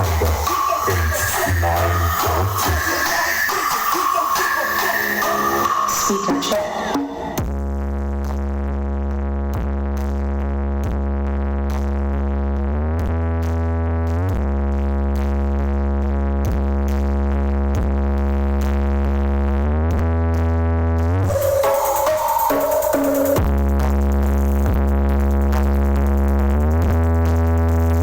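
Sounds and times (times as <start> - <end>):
held synthesizer chords: 0.0 - 7.4, 21.3 - 23.7
steady bass note: 21.3 - 27.3.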